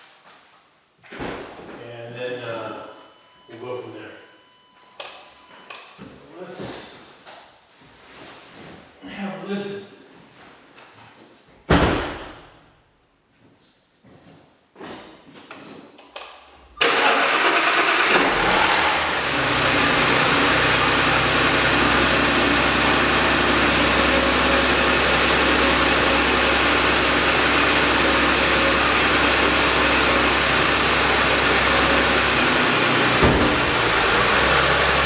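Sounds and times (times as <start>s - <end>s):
car engine starting and idling: 16.8s - 35.0s.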